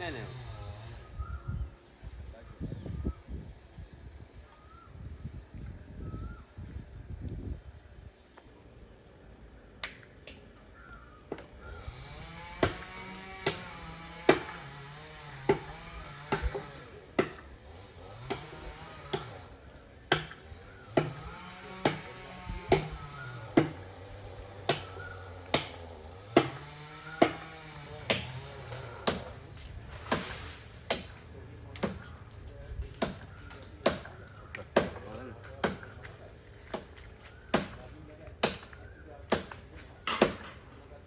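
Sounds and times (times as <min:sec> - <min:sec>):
chopping wood: 0:12.6 - 0:14.8, 0:15.4 - 0:17.5, 0:18.2 - 0:19.5, 0:20.1 - 0:23.9, 0:24.6 - 0:29.4, 0:30.0 - 0:32.2, 0:33.0 - 0:40.6.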